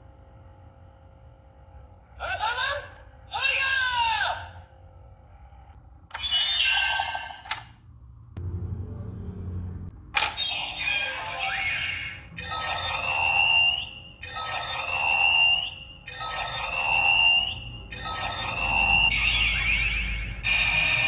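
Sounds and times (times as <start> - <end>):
sharp click: 7.4 - 7.8, 10.2 - 10.5
looping electronic toy music: 10.4 - 21.0.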